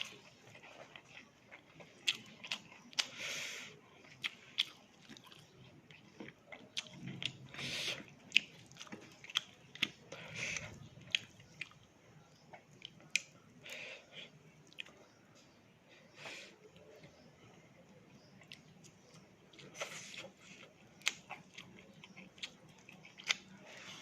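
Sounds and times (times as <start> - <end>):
person chewing and crunching: 0.0 - 15.1, 18.2 - 24.0.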